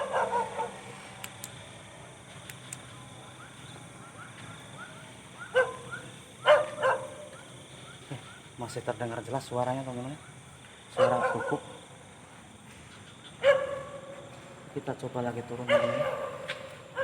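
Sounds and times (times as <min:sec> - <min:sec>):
dog barking: 0:00.0 - 0:00.9, 0:05.4 - 0:07.4, 0:11.0 - 0:11.8, 0:13.4 - 0:14.2, 0:15.6 - 0:17.0.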